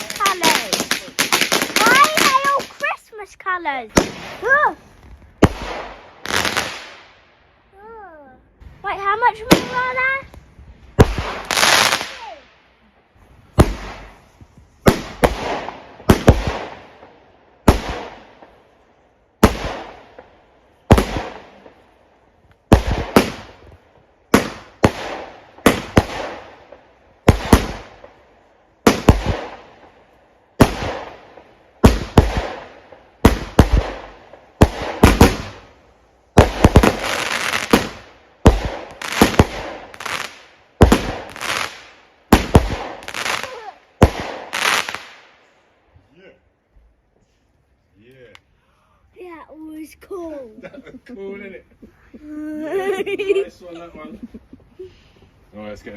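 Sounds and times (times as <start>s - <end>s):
firework bangs: 0.0s - 7.2s, 9.1s - 10.3s, 10.9s - 12.6s, 13.5s - 18.6s, 19.4s - 21.9s, 22.6s - 30.0s, 30.6s - 45.4s.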